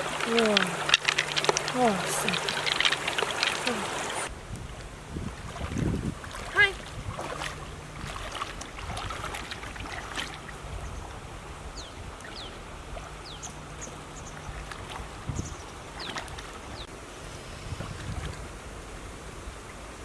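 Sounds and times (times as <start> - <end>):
outdoor water: 0.0 - 20.0
wind noise: 0.0 - 20.0.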